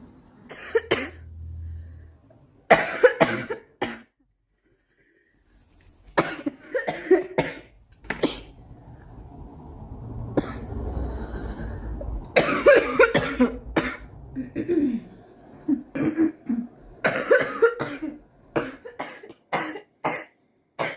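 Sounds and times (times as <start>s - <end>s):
girl coughing: 0.5s - 1.2s, 2.7s - 4.1s, 6.2s - 8.5s, 12.4s - 15.1s, 15.8s - 20.9s
low rumble: 7.8s - 15.9s.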